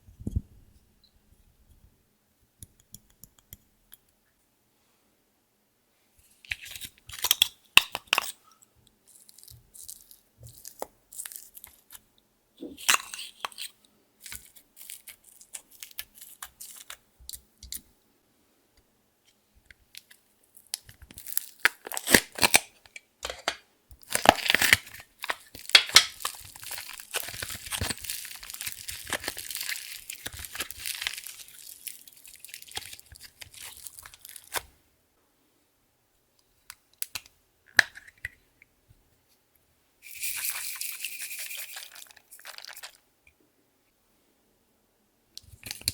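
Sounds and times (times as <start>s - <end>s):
slime crackling: 24.0s - 34.6s.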